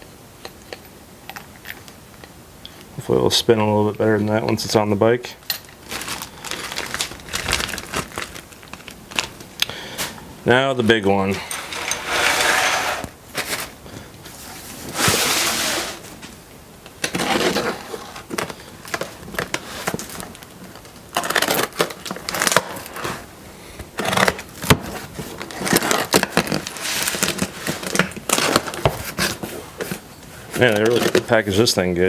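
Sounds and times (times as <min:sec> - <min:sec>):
small knocks and crinkles: 0:05.4 - 0:10.2, 0:16.0 - 0:23.2, 0:23.9 - 0:31.6
cardboard tearing and rustling: 0:05.8 - 0:10.2, 0:12.0 - 0:16.3, 0:17.0 - 0:23.3, 0:24.0 - 0:31.4.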